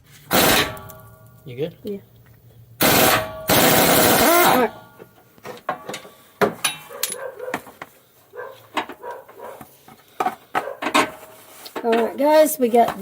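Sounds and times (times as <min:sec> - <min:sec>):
loud bursts of noise: 0:02.8 - 0:04.8
tools clicking and knocking on metal: 0:05.0 - 0:07.9, 0:08.6 - 0:12.2.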